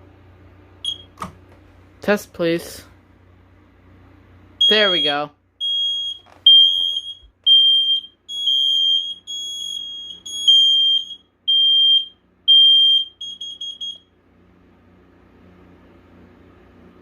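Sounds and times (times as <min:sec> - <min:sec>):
shrill smoke alarm beeps: 0:00.8 - 0:01.2, 0:04.6 - 0:14.1.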